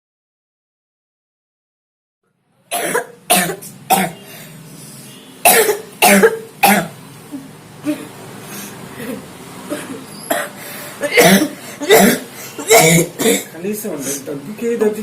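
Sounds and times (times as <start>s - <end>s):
boy coughing: 2.7s - 4.2s, 5.4s - 7.0s, 7.8s - 8.1s, 9.0s - 14.2s.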